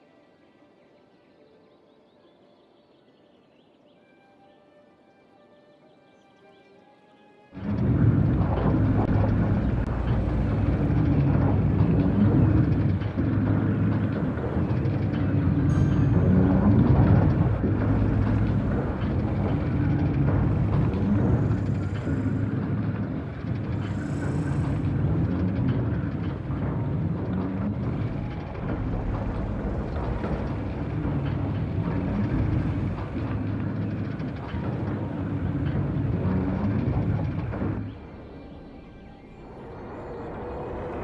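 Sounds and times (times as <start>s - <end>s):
vehicle engine droning: 7.6s - 38.4s.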